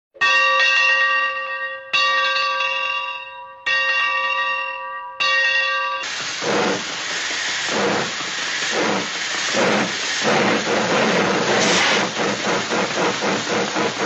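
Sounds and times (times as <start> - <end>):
loud steady hiss: 6.0 - 14.0.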